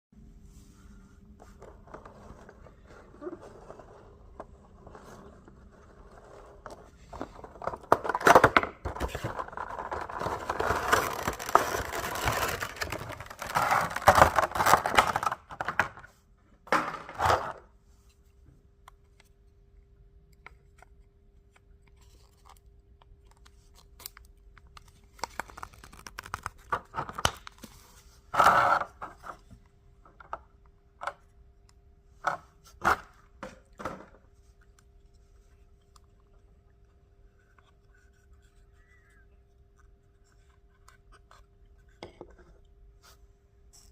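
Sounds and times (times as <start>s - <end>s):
packaging tearing: 9.8s - 15.3s.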